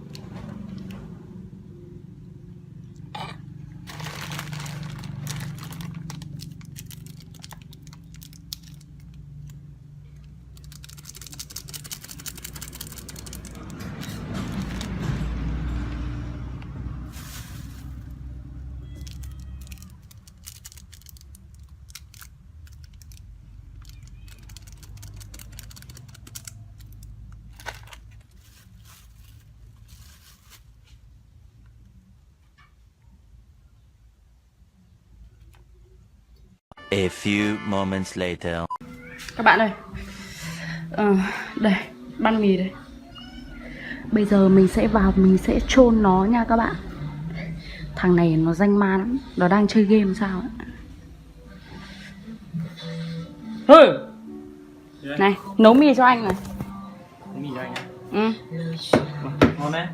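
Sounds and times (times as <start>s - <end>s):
seasoning packets rustling and tearing: 3.9s - 9.7s, 10.5s - 15.0s, 17.1s - 18.3s, 18.9s - 31.0s
low steady hum: 43.8s - 53.5s.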